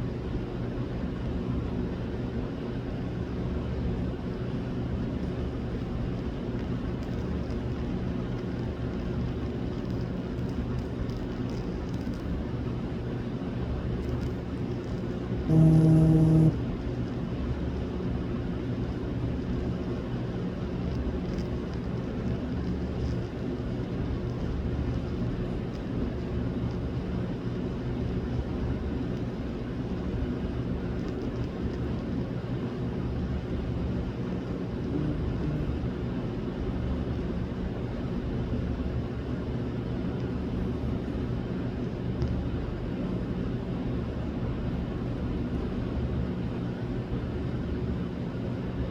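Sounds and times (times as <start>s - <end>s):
low mechanical hum and rumble: 0.0s - 48.9s
machine hum: 15.3s - 16.9s, 34.4s - 36.1s.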